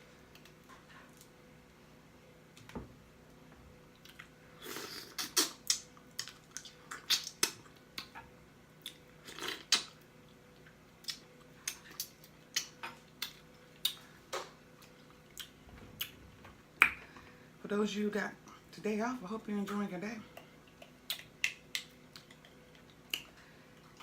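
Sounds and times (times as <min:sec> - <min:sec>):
wet mouth smacks and lip pops: 0:05.2 - 0:08.2, 0:20.4 - 0:23.3
wet chewing: 0:20.4 - 0:24.0.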